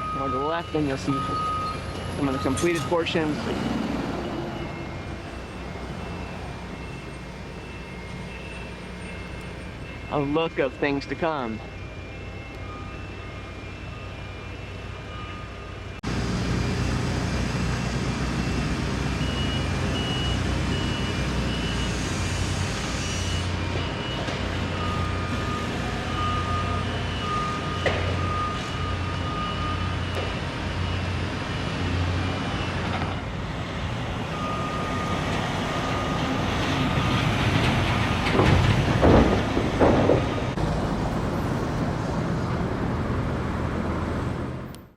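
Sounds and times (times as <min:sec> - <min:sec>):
back-up alarm beeping: 0:00.0 - 0:15.9, 0:17.9 - 0:22.0, 0:23.3 - 0:32.9, 0:34.3 - 0:37.3
heavy traffic and truck engines: 0:00.0 - 0:44.9.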